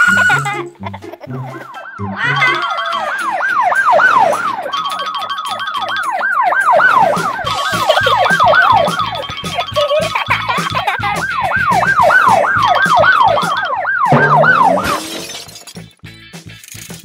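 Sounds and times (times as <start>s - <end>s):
police siren: 0.0s - 15.2s
background music with a beat: 6.6s - 15.2s, 15.9s - 17.0s.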